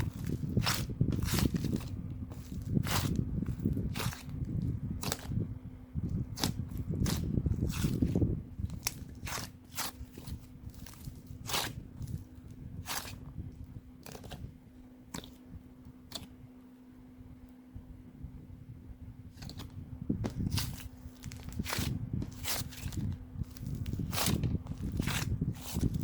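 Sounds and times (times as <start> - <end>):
clay squeezed by hand crackling: 0.0 - 5.4, 6.1 - 13.3, 15.1 - 16.4, 19.4 - 26.0.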